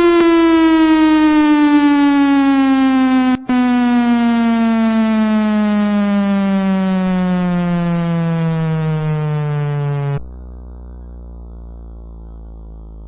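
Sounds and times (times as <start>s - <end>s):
warning siren winding down: 0.0s - 10.3s.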